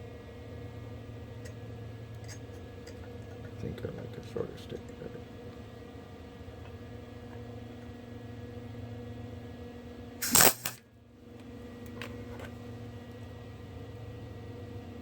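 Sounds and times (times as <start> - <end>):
steady low hum: 0.0 - 15.0
welding arc crackling: 10.2 - 10.8.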